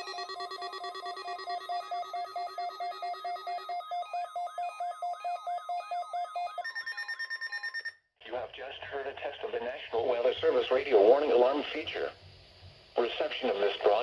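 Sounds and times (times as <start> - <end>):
rising electronic chirp: 0.0 - 7.9
fast electronic alarm beeps: 0.0 - 8.0
higher steady alarm tone: 0.0 - 8.0
steady low alarm tone: 0.0 - 8.0.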